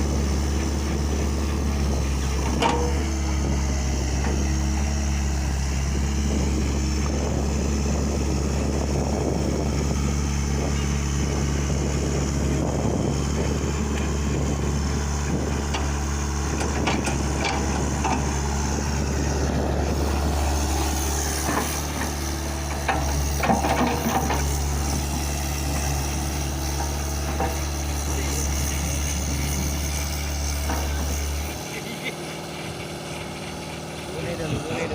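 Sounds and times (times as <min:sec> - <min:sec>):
excavator diesel engine running: 0:00.0 - 0:34.9
knocks and clanks: 0:02.4 - 0:03.1, 0:21.4 - 0:24.5.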